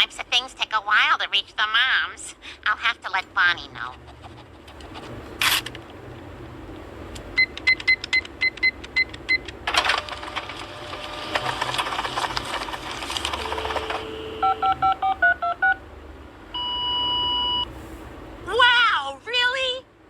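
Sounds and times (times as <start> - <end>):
noisy clatter: 9.6 - 14.4
phone keypad beeps: 13.4 - 15.8
two-tone dialing beeps: 13.4 - 15.8, 16.6 - 17.7.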